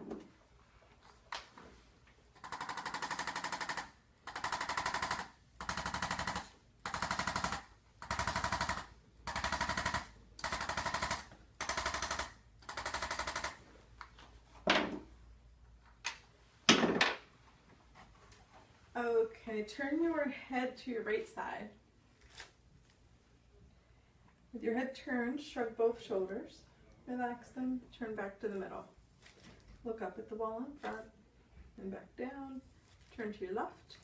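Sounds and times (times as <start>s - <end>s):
rapid clicking of adjusting instrument: 2.4s - 13.6s.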